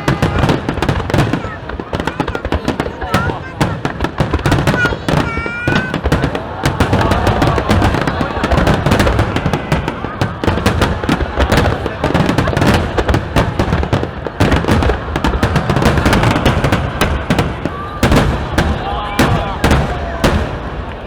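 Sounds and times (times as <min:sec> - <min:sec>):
fireworks bangs and crackling: 0:00.0 - 0:21.0.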